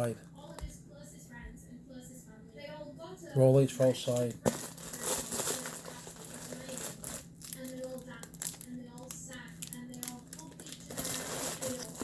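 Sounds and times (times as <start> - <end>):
plastic packaging crinkling: 3.9 - 12.0.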